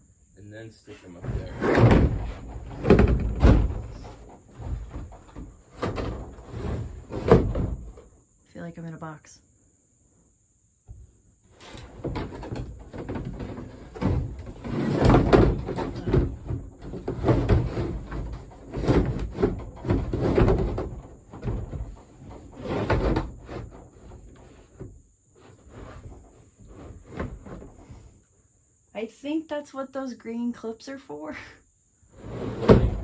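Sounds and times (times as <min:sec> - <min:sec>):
hollow plastic knocks and scrapes: 0:01.2 - 0:08.1, 0:11.6 - 0:28.2, 0:32.3 - 0:33.0.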